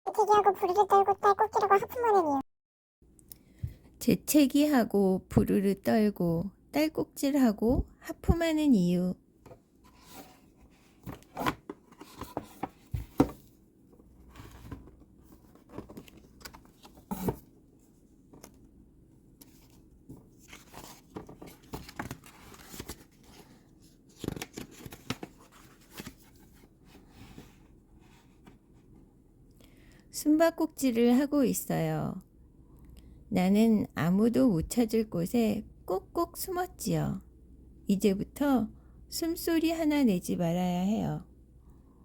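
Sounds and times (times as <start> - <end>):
book pages rustling and turning: 9.5 - 29.0.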